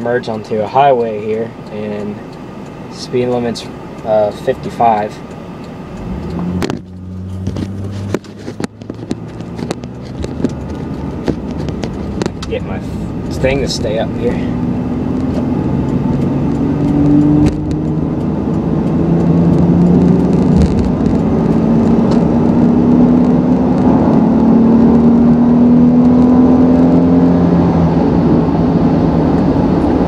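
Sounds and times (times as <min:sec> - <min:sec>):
road noise: 0:00.0 - 0:30.0
truck engine revving under load: 0:01.5 - 0:30.0.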